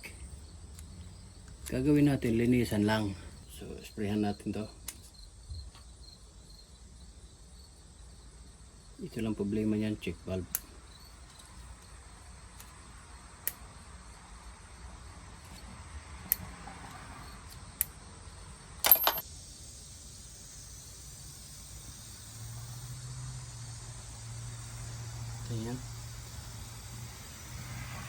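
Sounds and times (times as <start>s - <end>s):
metal clatter: 18.8s - 19.2s.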